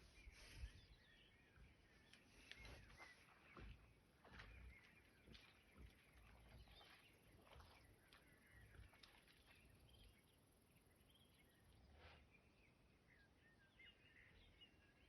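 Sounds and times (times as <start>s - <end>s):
faint bird chirps: 0.0s - 15.0s.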